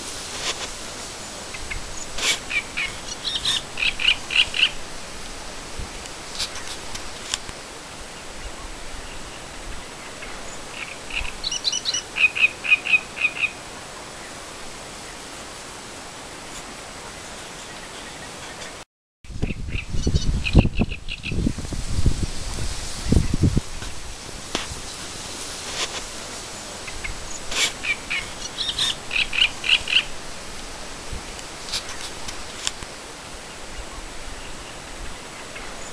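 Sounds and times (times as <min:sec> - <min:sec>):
sharp rustles or clicks: 0:00.0 - 0:00.8, 0:02.0 - 0:03.6, 0:06.0 - 0:07.6, 0:23.8 - 0:26.2, 0:27.4 - 0:27.9, 0:31.3 - 0:32.9
steady outdoor hiss: 0:00.0 - 0:35.9
songbird chirping: 0:01.0 - 0:04.8, 0:24.8 - 0:30.2.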